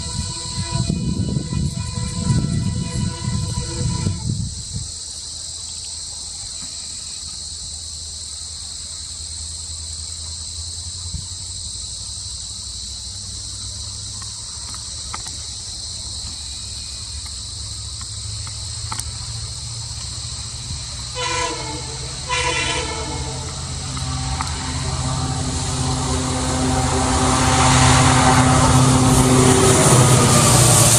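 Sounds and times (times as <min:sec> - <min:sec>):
locomotive horn blasts: 0:00.0 - 0:04.4, 0:21.1 - 0:30.9
crickets chirring: 0:00.0 - 0:30.9
diesel locomotive engine rumble: 0:00.0 - 0:30.9.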